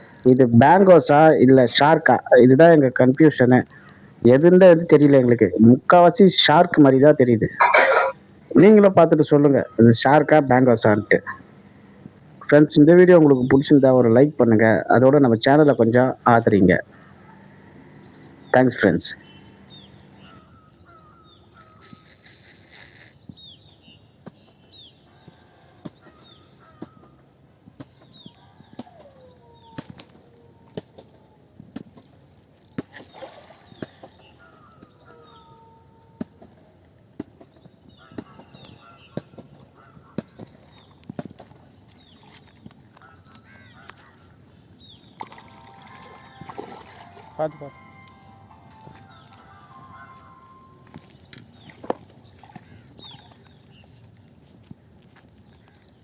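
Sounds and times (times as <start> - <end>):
birds calling with sliding notes: 7.5 - 23.3, 41.7 - 54.0
faint bird chirps: 7.6 - 8.2, 43.0 - 54.0.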